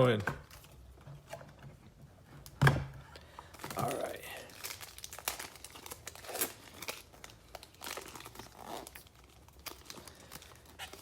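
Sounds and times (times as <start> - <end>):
foil wrapper crinkling and tearing: 3.4 - 11.0.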